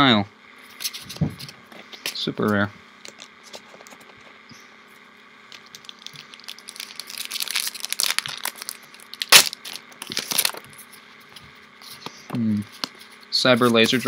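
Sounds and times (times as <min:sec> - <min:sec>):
foil pack crinkling: 0:05.5 - 0:11.0.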